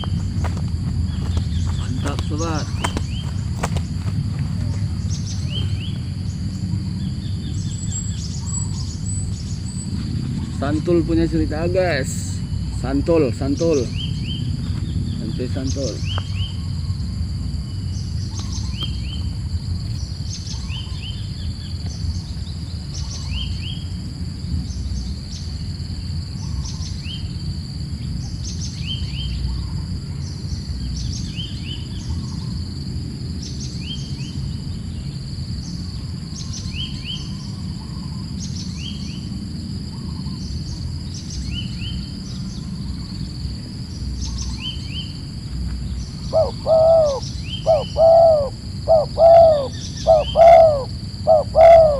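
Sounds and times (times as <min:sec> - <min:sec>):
low rumble: 0:00.0 - 0:51.3
high insect drone: 0:00.0 - 0:51.9
dove cooing: 0:46.3 - 0:51.9
short high bird calls: 0:46.3 - 0:51.9.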